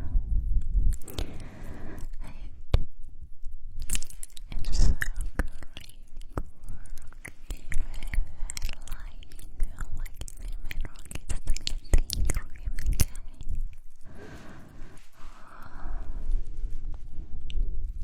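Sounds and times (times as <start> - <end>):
mouth clicks and smacks: 0.6 - 14.1.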